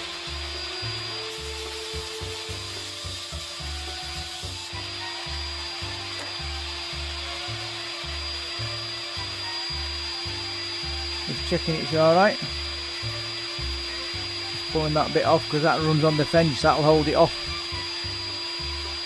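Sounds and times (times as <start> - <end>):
router whining cutting wood: 0.0 - 19.0.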